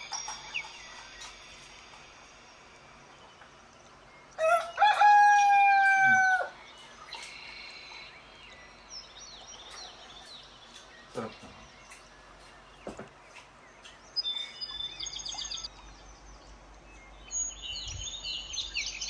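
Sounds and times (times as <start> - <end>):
rooster crowing: 4.4 - 6.6.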